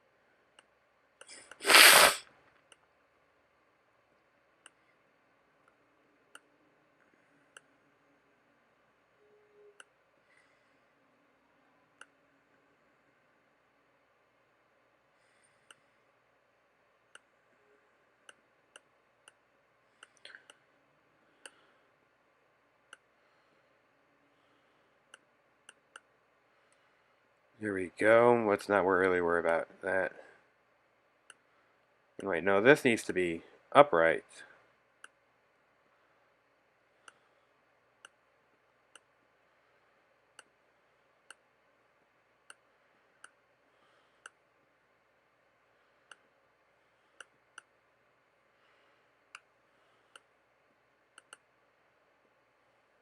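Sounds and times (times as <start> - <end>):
faint hiss: 1.2 - 2.3.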